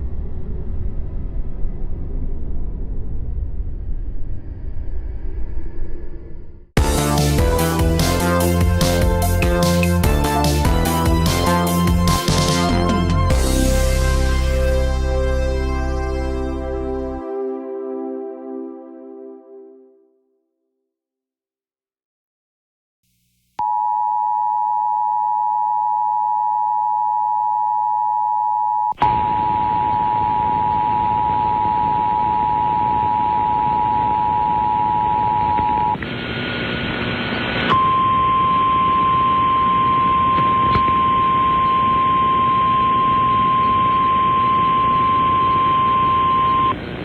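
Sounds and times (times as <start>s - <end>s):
single-tone warning alarm: 23.6s - 36.0s, 37.7s - 46.8s
harsh two-tone alarm: 26.7s - 36.0s, 37.7s - 46.8s
radio static: 29.0s - 37.7s.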